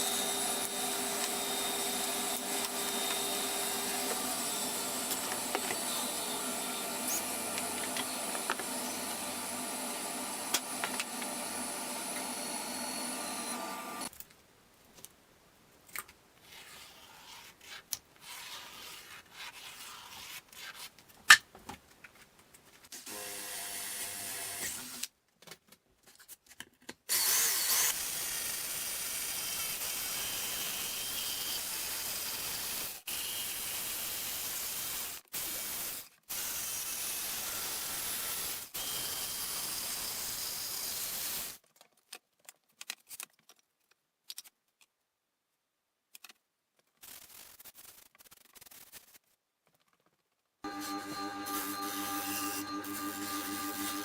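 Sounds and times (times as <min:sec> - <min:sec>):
power tool motor running: 0:00.0 - 0:14.1, 0:50.7 - 0:54.0.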